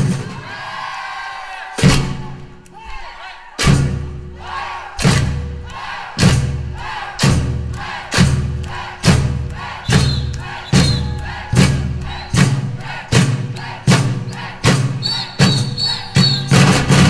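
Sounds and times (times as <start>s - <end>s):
bass drums beating slowly: 3.6s - 17.0s.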